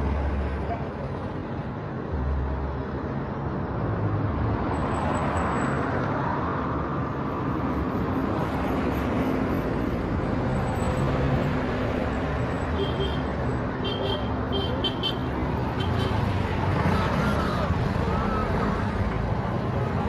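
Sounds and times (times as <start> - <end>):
tyres on road: 0.0 - 20.0
vehicle engines running: 7.8 - 20.0.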